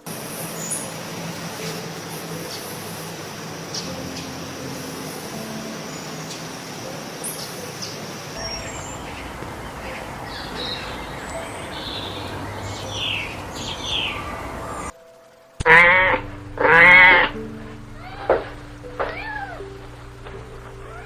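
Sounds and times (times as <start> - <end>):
birds chirping: 0.0 - 15.0
outdoor background noise: 0.0 - 21.0.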